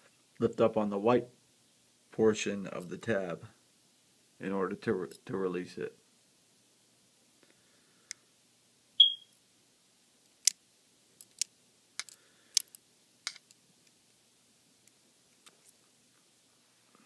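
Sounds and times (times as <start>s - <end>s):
brief high chirp: 9.0s - 9.3s
tool clicking on phone parts: 11.2s - 13.5s.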